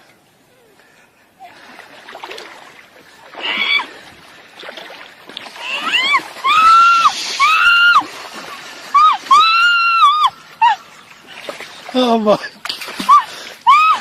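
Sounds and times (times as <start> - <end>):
woman squealing: 3.4 - 3.9, 5.6 - 8.1, 9.0 - 10.8, 13.0 - 14.0.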